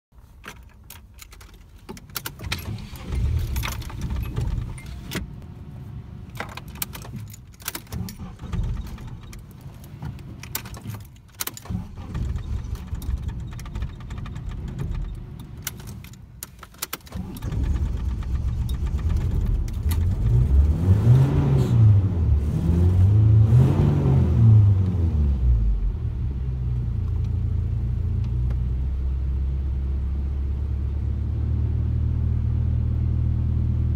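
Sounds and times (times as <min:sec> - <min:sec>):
car engine cranking: 0:00.4 - 0:05.4, 0:06.2 - 0:25.0
car engine revving and idling: 0:17.1 - 0:33.9.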